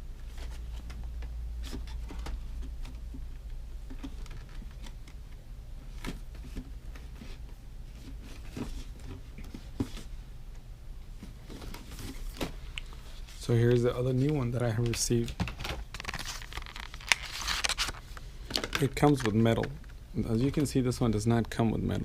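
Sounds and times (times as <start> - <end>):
steady low hum: 0.0 - 22.0
packaging rustling: 14.2 - 20.0.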